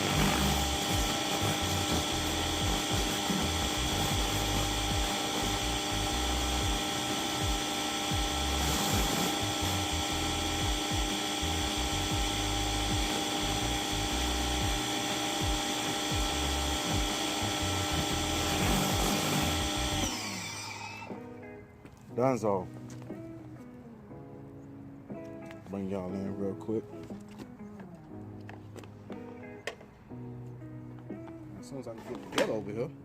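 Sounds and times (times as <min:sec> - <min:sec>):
pressure washer motor whine: 0:00.0 - 0:21.3.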